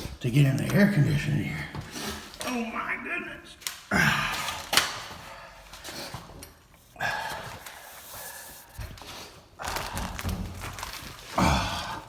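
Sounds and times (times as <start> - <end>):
man breathing hard: 6.9 - 10.4, 11.3 - 12.0.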